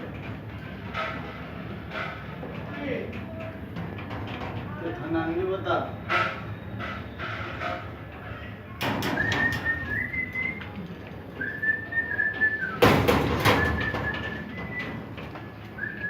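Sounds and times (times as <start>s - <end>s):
knocks and clatter: 0.0s - 5.0s, 8.8s - 10.2s, 12.4s - 16.0s
high clear whistled tone: 9.1s - 10.8s, 11.4s - 12.8s, 13.5s - 15.0s, 15.8s - 16.0s
thump: 12.8s - 14.2s.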